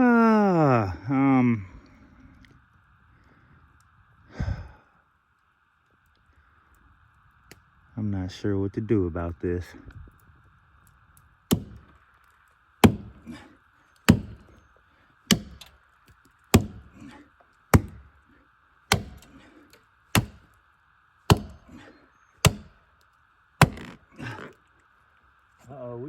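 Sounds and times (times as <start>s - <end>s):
chopping into tree root: 11.5s - 11.9s, 12.8s - 13.4s, 14.1s - 14.5s, 15.3s - 15.7s, 16.5s - 17.1s, 17.7s - 18.1s, 18.9s - 19.4s, 20.2s - 20.5s, 21.3s - 21.8s, 22.4s - 22.8s, 23.6s - 24.5s.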